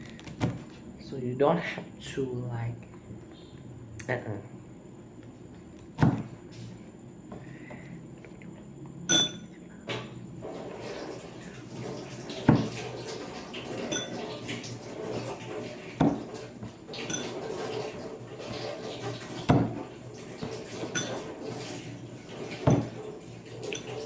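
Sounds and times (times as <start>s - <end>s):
utensils clinking: 9.1s - 10.1s, 12.4s - 24.0s.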